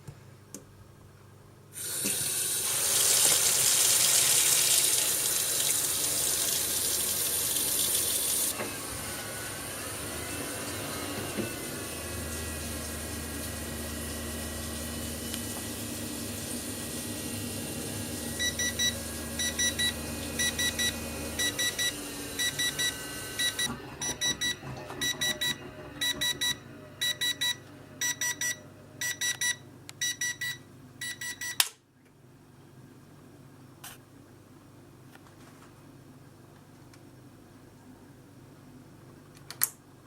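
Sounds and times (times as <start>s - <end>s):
boiler hum: 0.0s - 30.9s.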